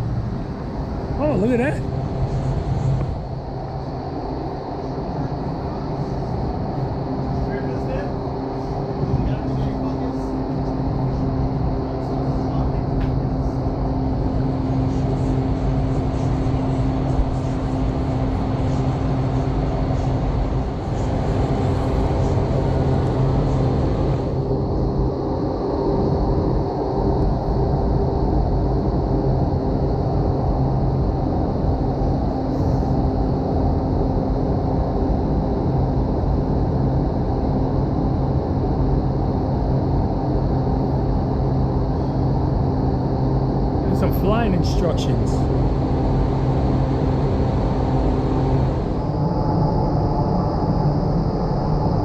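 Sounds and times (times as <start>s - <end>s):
low machine hum: 0.0s - 52.0s.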